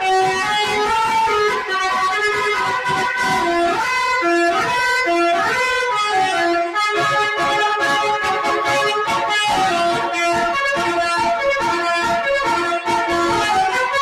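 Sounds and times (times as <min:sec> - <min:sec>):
musical bus horn melody: 0:00.0 - 0:14.0.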